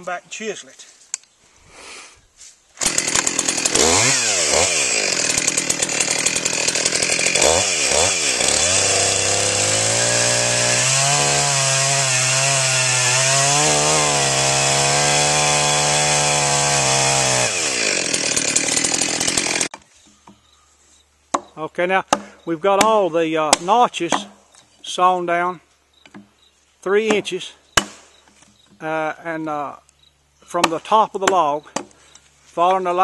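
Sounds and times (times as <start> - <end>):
chainsaw cutting a log: 2.8 - 19.7.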